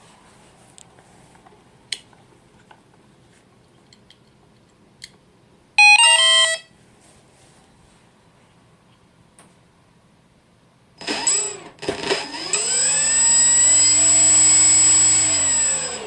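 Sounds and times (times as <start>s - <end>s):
motor controller beeping tones: 5.8s - 6.7s.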